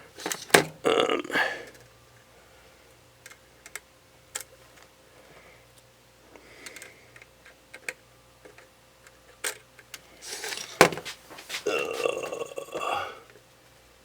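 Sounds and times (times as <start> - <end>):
soft rustle: 10.2 - 12.2.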